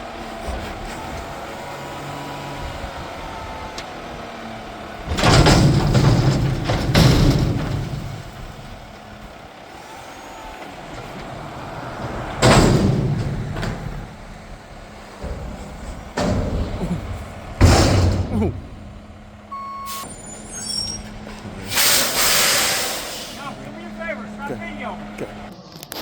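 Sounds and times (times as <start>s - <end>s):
garbage truck engine running: 0.0s - 26.0s
air brake bursts: 19.7s - 23.6s.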